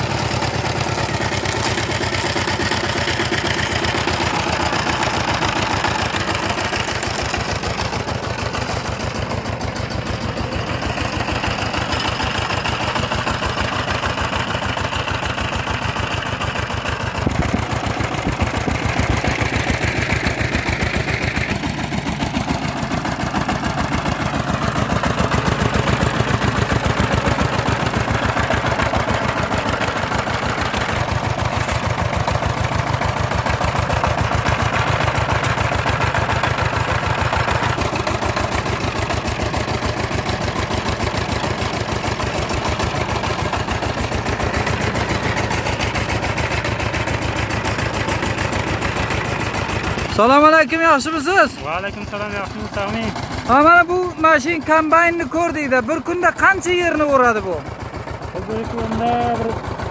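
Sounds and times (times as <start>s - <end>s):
harvester engine running: 0.0s - 59.9s.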